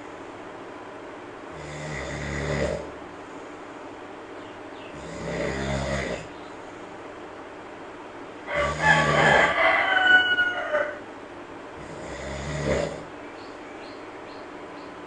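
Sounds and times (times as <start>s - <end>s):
monkey snoring: 1.5s - 3.0s, 4.9s - 6.3s, 8.6s - 9.5s, 11.8s - 13.1s
rooster crowing: 8.4s - 11.2s.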